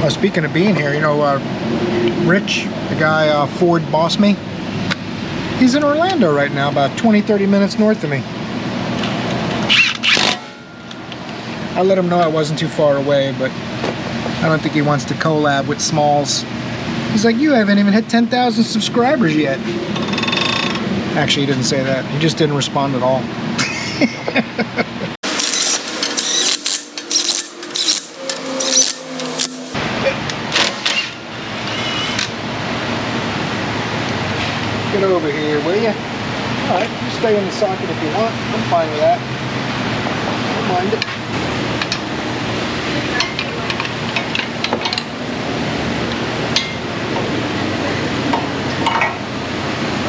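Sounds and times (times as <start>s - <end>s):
small power tool rattling: 25.2s - 29.8s.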